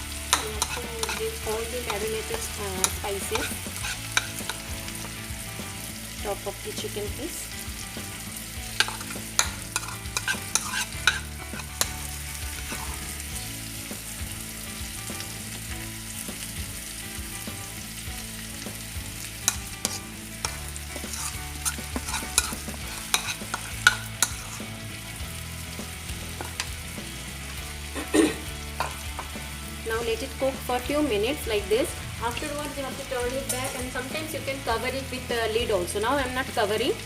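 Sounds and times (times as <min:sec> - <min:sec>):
chicken sizzling in a pan: 0:00.0 - 0:37.0
spatula scraping a pan: 0:00.2 - 0:05.2, 0:08.6 - 0:13.3, 0:19.4 - 0:24.8.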